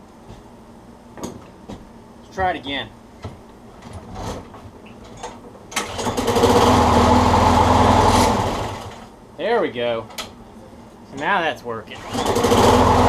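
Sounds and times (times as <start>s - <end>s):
lawn mower engine starting and running: 5.7s - 9.1s, 12.0s - 13.0s.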